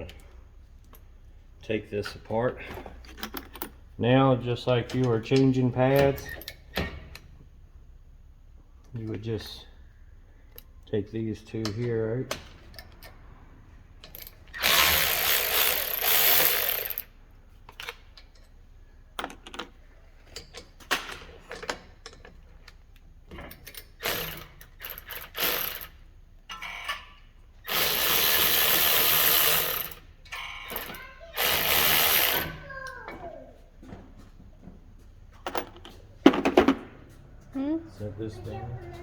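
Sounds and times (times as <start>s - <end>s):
handheld power tool running: 14.1s - 17.1s, 24.0s - 26.0s, 27.7s - 30.0s, 30.7s - 32.6s.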